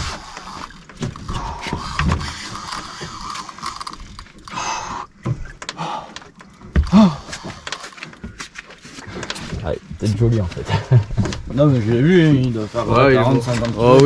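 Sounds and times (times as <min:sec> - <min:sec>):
fishing reel gear whirring: 0:00.0 - 0:05.1.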